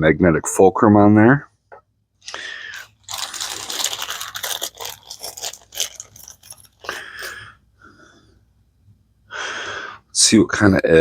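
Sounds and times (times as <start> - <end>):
packaging crinkling and rustling: 2.7 - 7.4.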